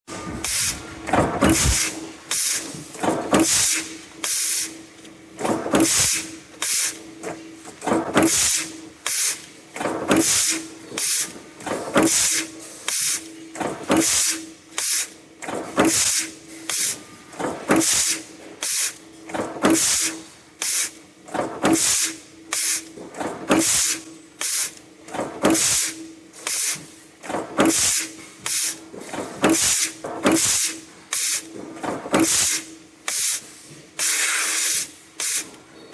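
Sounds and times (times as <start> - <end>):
press machine punching: 0.1 - 3.8
compressed air hiss: 32.3 - 35.5.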